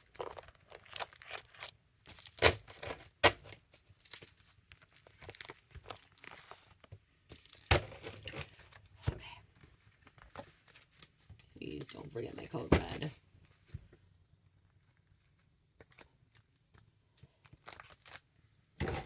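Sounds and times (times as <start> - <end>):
cards rustling and shuffling: 0.0 - 13.8.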